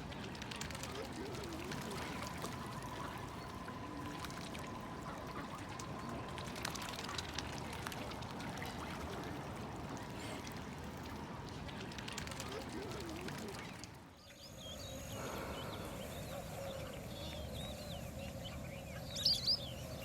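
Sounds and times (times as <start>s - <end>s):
water trickling and splashing: 0.0s - 20.0s.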